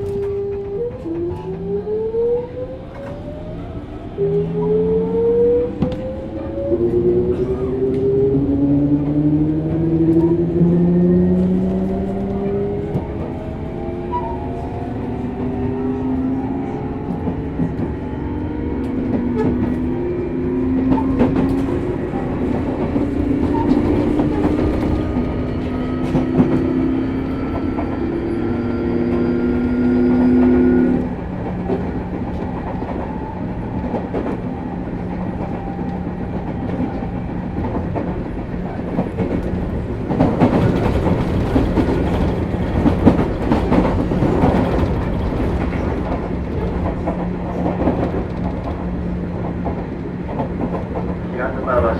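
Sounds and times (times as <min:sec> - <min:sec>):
rail-joint clatter: 0:18.8 - 0:28.2, 0:33.8 - 0:51.9.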